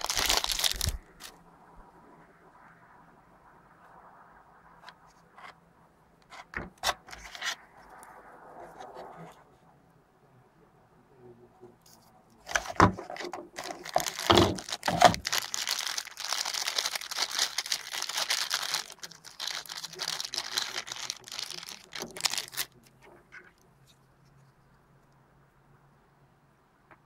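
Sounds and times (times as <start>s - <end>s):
packaging crinkling: 0.0s - 1.3s, 12.4s - 22.9s.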